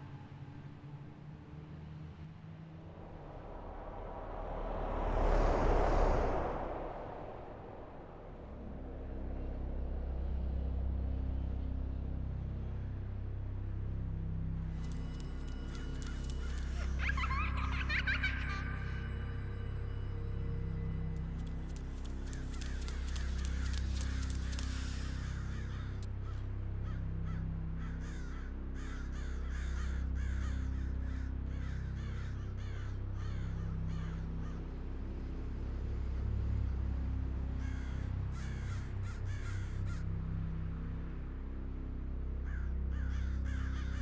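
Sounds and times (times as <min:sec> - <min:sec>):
low droning hum: 0:00.0 - 0:44.0
birds cawing: 0:14.9 - 0:19.2, 0:22.0 - 0:34.6, 0:37.6 - 0:40.1, 0:42.4 - 0:44.0.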